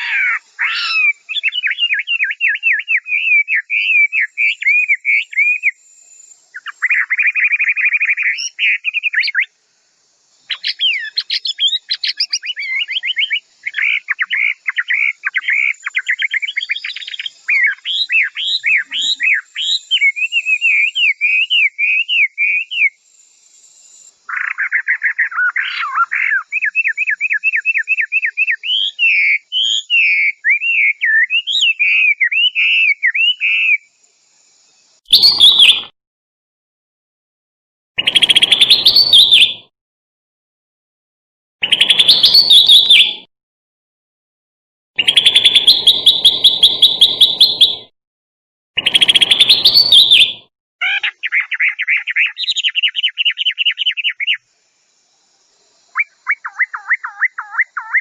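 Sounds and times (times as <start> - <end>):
harsh bird call bursts: 0.0 - 1.5, 35.1 - 35.9, 38.0 - 39.6, 41.6 - 43.3, 45.0 - 47.9, 48.8 - 53.2
songbird chirps and trills: 0.0 - 35.9, 38.0 - 39.5, 41.6 - 43.2, 45.0 - 47.9, 48.8 - 58.0.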